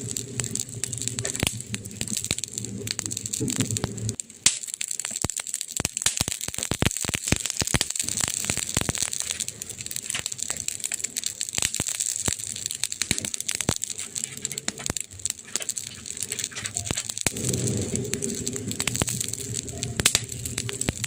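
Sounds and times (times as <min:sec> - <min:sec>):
wood fire crackling and popping: 0:00.0 - 0:21.0
steady high hiss: 0:17.1 - 0:21.0.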